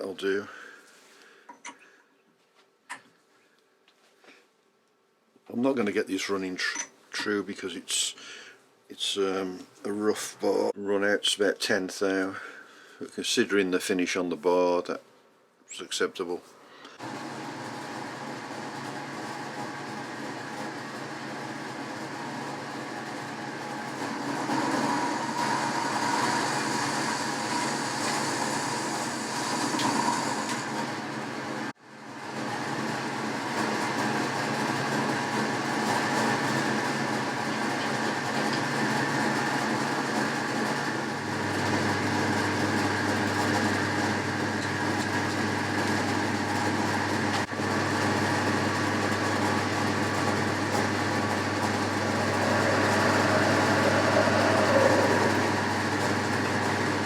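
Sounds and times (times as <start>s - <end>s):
metal lathe humming: 23.0s - 31.6s, 50.1s - 57.0s
lathe drive rattle: 50.2s - 57.0s
deeper hum: 50.8s - 57.0s.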